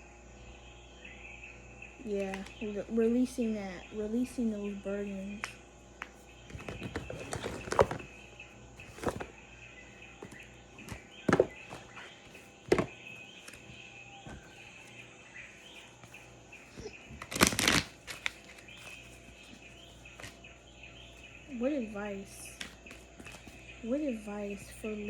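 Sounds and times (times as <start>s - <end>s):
birds and insects chirring: 0.0s - 25.0s
rustling: 6.5s - 9.3s, 15.6s - 21.3s.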